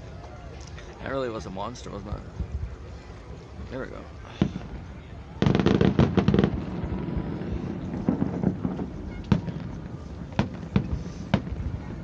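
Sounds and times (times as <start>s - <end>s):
fireworks rumble and crackle: 0.0s - 12.0s
sharp firework bangs: 4.4s - 12.0s.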